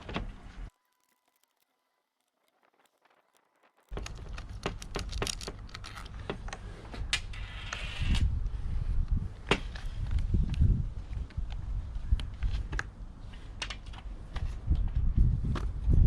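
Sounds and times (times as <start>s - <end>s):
small plastic and metal clicks: 0.7s - 7.8s.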